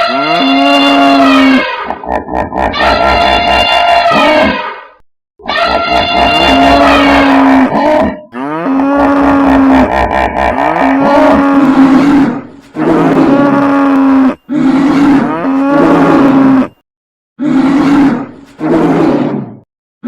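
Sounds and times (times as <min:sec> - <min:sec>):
loud long animal calls: 0:00.1 - 0:04.6, 0:05.4 - 0:16.7.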